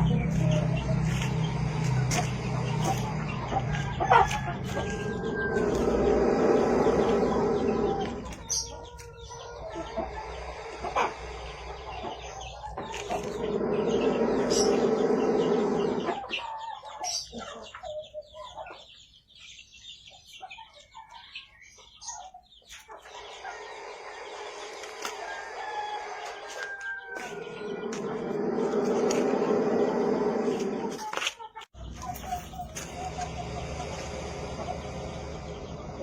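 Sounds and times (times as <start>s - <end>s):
chickens clucking: 0.0s - 36.0s
snake breathing with rasping sound: 0.6s - 8.7s, 9.6s - 16.2s, 23.1s - 26.5s, 27.2s - 31.0s.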